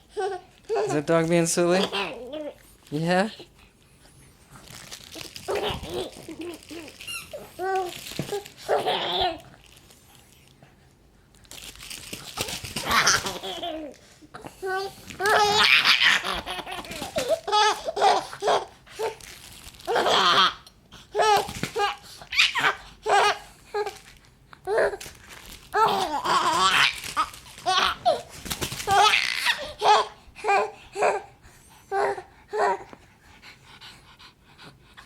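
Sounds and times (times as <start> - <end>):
baby giggling: 5.5 - 7.4, 8.7 - 9.4, 12.8 - 14.0.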